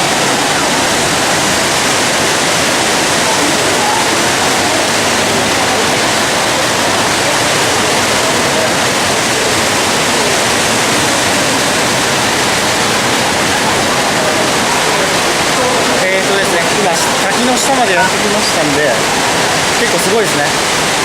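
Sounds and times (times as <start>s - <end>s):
waterfall rushing: 0.0s - 21.0s.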